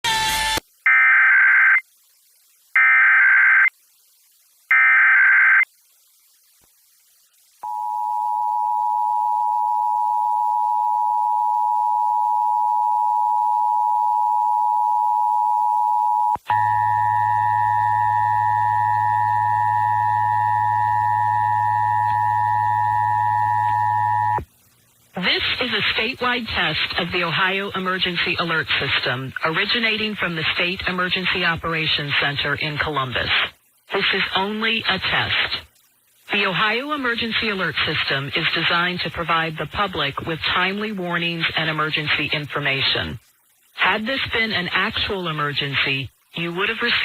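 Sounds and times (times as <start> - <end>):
low hum: 7.6 - 25.0.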